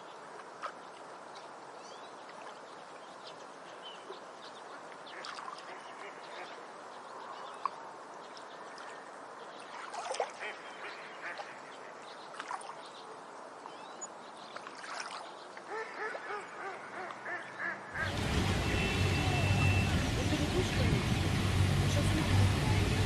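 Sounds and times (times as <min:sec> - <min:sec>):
ducks quacking: 0:10.3 - 0:11.8, 0:15.7 - 0:23.0.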